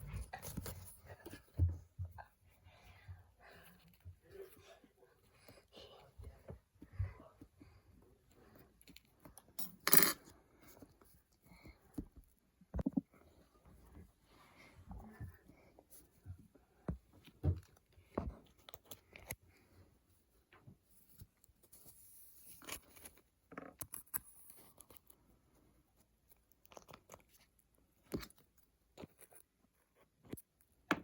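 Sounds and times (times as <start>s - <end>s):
hands handling objects: 0.0s - 2.4s.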